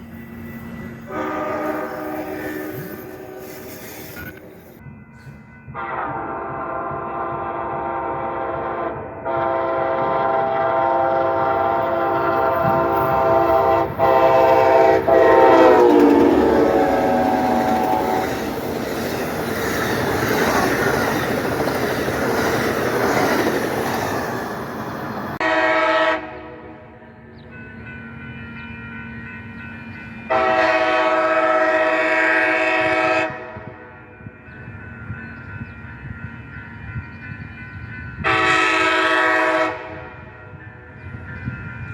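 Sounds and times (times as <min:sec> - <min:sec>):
passing train rumble and clatter: 0:00.0 - 0:41.9
locomotive air horn blasts: 0:01.1 - 0:03.8, 0:05.7 - 0:18.4, 0:25.4 - 0:27.0, 0:30.3 - 0:33.9, 0:38.2 - 0:40.3.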